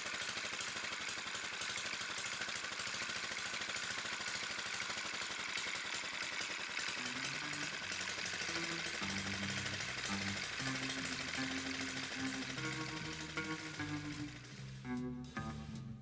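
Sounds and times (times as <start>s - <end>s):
motorbike engine running: 0.0s - 16.0s.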